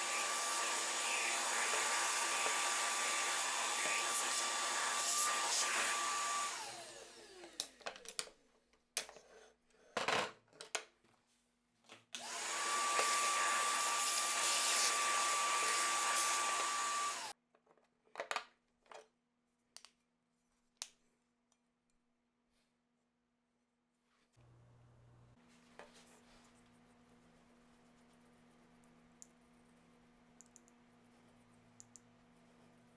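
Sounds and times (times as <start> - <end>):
power tool motor whine: 0.0 - 7.6, 12.2 - 17.3.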